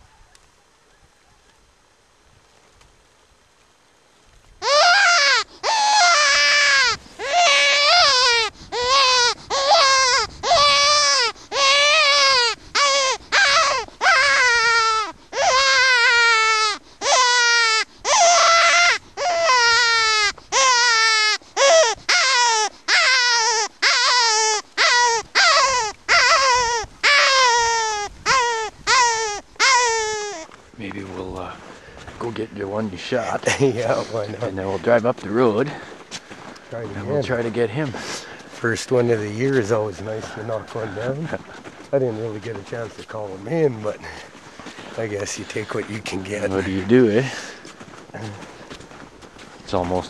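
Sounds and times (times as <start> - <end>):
predator call wailing cries: 4.6 - 30.5.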